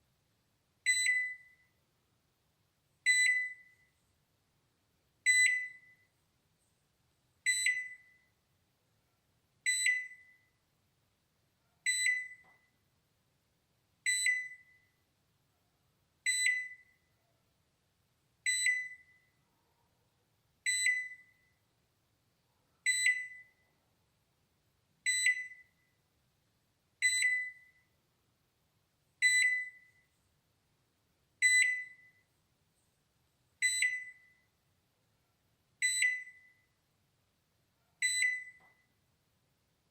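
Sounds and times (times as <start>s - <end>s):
microwave alarm beeps: 0.8s - 1.8s, 3.0s - 4.0s, 5.2s - 6.1s, 7.4s - 8.4s, 9.6s - 10.6s, 11.8s - 12.7s, 14.0s - 15.0s, 16.2s - 17.0s, 18.4s - 19.4s, 20.6s - 21.6s, 22.8s - 23.6s, 25.0s - 25.9s, 27.0s - 27.9s, 29.2s - 30.1s, 31.4s - 32.3s, 33.6s - 34.5s, 35.8s - 36.7s, 38.0s - 38.9s.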